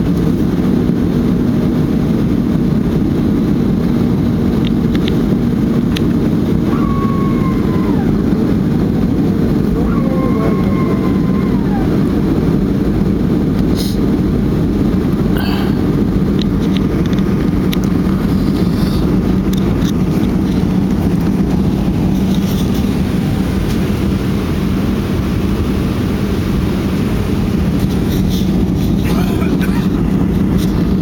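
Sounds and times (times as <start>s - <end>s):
airliner engines rumbling: 0.0s - 31.0s
rushing air: 2.6s - 31.0s.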